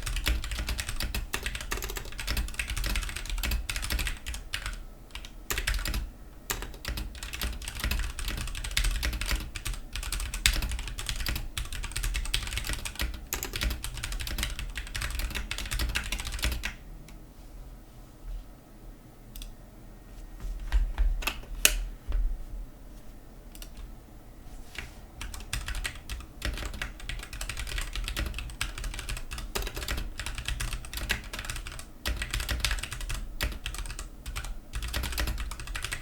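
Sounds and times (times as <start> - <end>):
fast mechanical keyboard typing: 0.0 - 16.8, 25.2 - 36.0.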